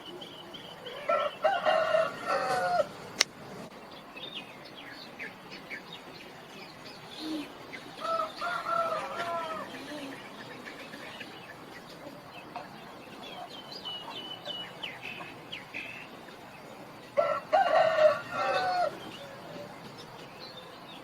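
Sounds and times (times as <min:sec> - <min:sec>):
small birds chirping: 0:00.0 - 0:21.0
rooster crowing: 0:01.0 - 0:03.0, 0:08.0 - 0:10.0, 0:17.2 - 0:19.0.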